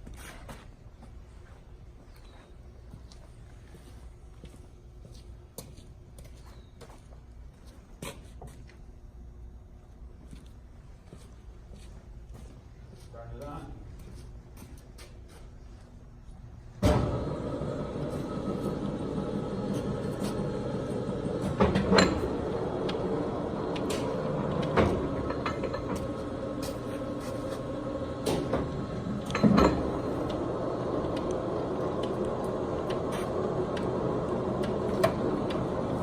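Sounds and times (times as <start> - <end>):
lathe motor droning: 16.9 - 36.0.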